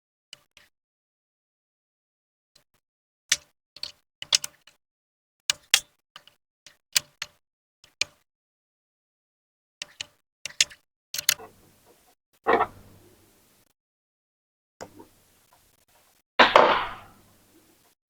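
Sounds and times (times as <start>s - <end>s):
plastic parts clicking: 11.2s - 11.9s, 12.5s - 13.2s, 16.4s - 17.2s.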